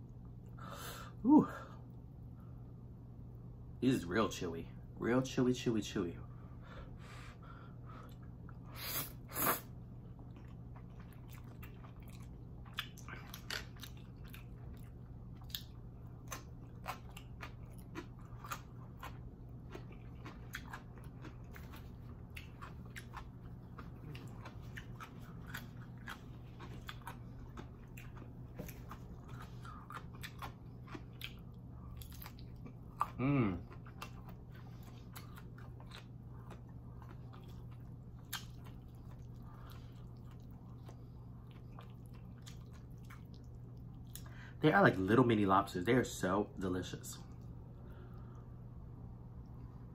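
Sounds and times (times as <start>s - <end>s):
person chewing noodles: 7.4s - 44.6s.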